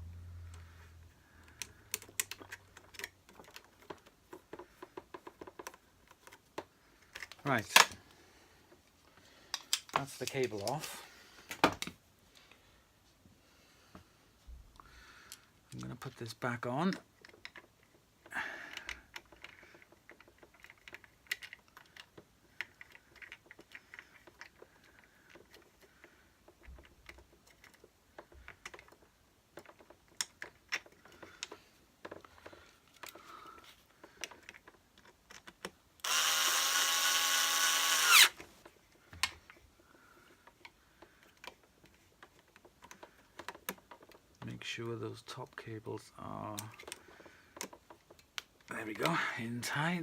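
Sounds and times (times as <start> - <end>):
plastic parts and screws clicking: 0.4 - 12.5, 14.7 - 49.2
cordless screwdriver running: 36.0 - 38.4.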